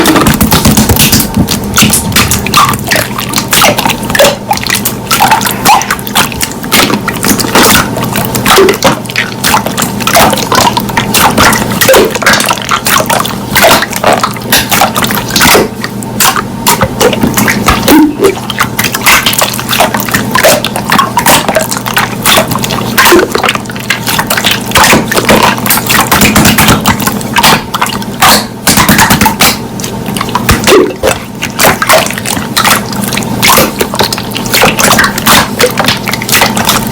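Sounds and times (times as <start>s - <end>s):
slime squelching and popping: 0.0s - 36.9s.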